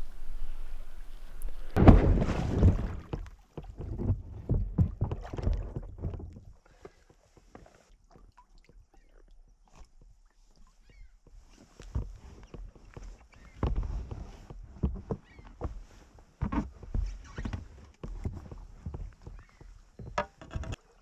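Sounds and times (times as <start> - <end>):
water splashing against kayak hull: 0.0 - 21.0.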